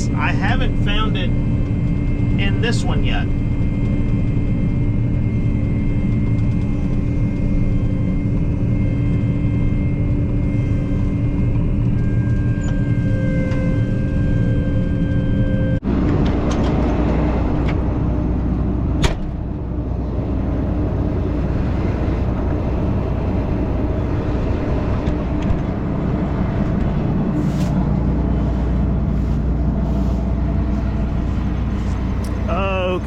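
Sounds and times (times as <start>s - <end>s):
combine harvester droning: 0.0s - 33.0s.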